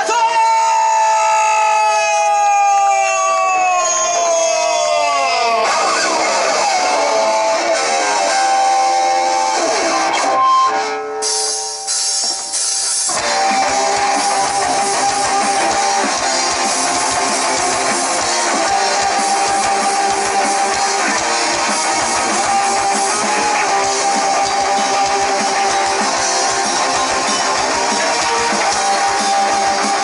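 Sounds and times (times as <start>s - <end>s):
electric guitars: 0.0s - 30.0s
heavy rock band playing live: 0.0s - 30.0s
drum kit: 5.6s - 30.0s.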